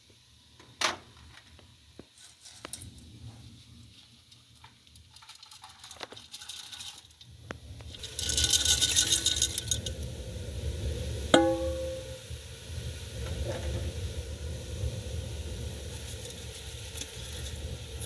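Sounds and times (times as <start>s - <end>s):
crackling sizzle: 0.0s - 18.0s
metal clinking on metal: 11.4s - 12.2s.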